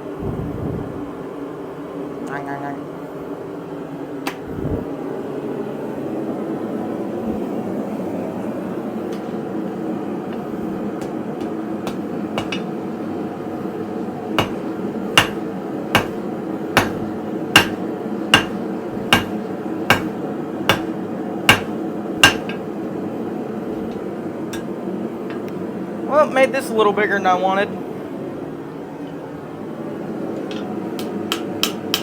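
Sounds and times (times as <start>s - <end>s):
steady background hum: 0.0s - 32.0s
hammer striking steel on anvil: 11.0s - 12.8s, 14.4s - 22.7s, 30.5s - 32.0s.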